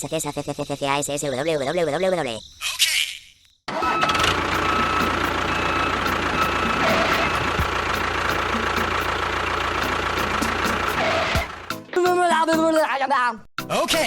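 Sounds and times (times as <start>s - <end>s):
motor running with whine: 3.8s - 9.2s.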